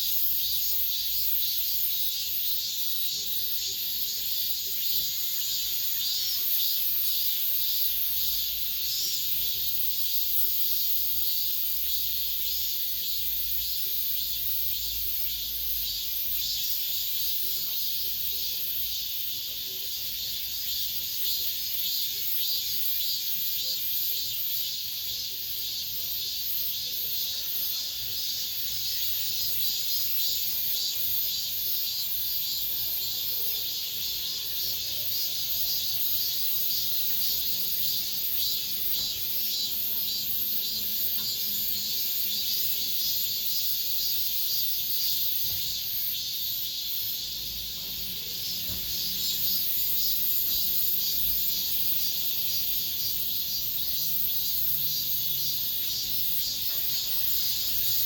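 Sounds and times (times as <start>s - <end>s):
cicadas buzzing: 0.0s - 58.0s.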